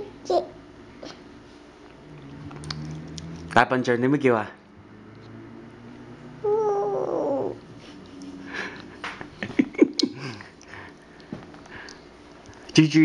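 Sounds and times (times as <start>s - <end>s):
breathy clicking mouth sounds: 10.0s - 12.7s.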